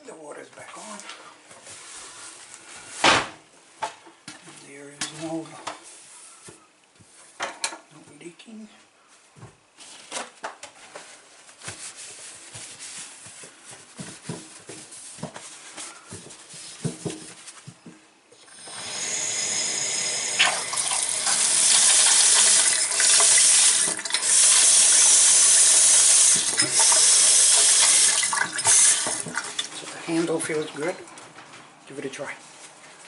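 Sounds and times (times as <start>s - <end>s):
tap water running into sink: 18.6s - 29.7s.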